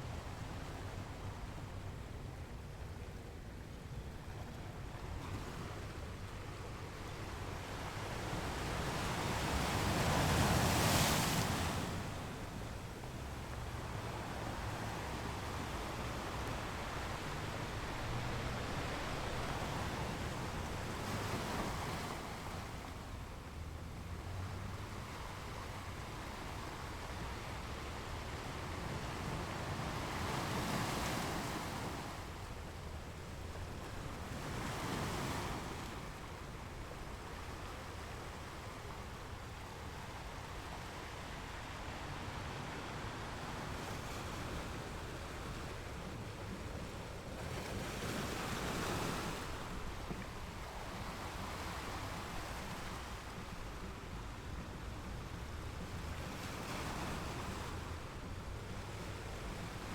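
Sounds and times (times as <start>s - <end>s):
ocean waves breaking on beach: 5.2s - 59.9s.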